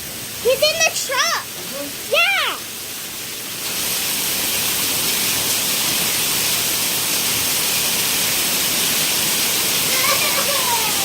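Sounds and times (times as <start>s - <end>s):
heavy rain falling: 0.0s - 11.0s.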